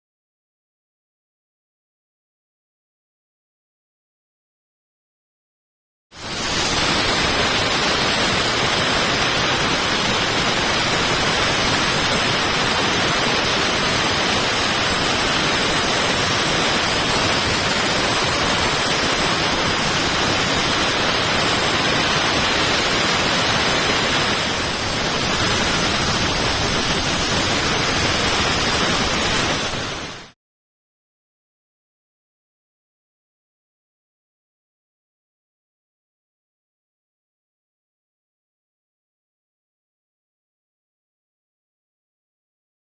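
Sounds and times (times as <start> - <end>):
dry ice blaster hissing: 6.2 - 30.2.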